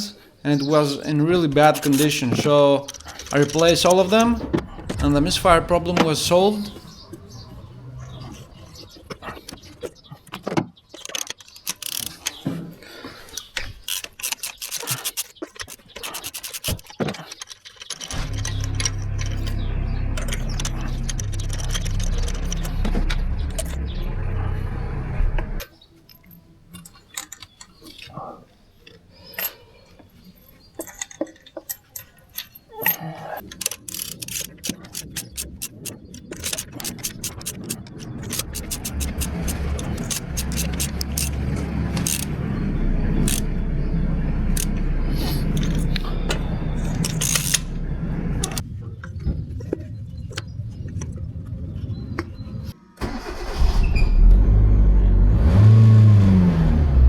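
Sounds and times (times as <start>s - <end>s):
car engine running and revving: 3.7s - 9.1s, 18.1s - 25.6s, 36.6s - 48.6s, 54.2s - 57.0s
metallic tool clicks: 13.5s - 24.0s, 30.8s - 43.6s, 44.5s - 47.7s.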